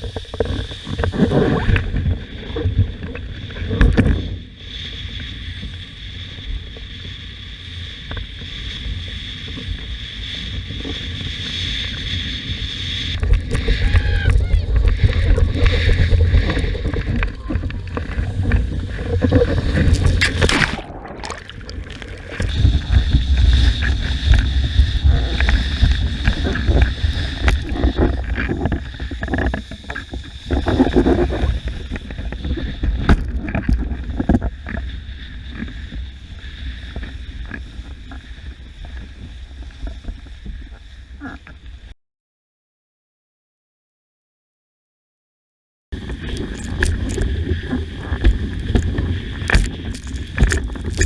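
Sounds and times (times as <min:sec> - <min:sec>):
wind buffeting microphone: 0:08.2 - 0:37.8
water rushing and splashing: 0:12.9 - 0:40.7, 0:46.0 - 0:51.0
heavy low rumble: 0:13.2 - 0:28.3.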